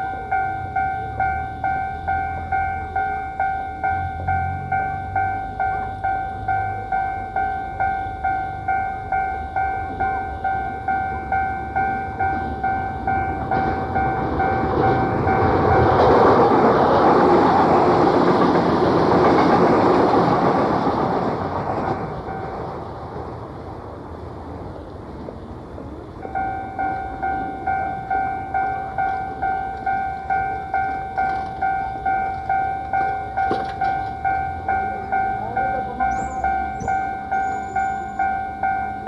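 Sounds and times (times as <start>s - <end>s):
level-crossing alarm bell: 0.0s - 17.4s, 22.2s - 22.8s, 26.2s - 39.0s
train wheel and rail noise: 0.0s - 39.0s.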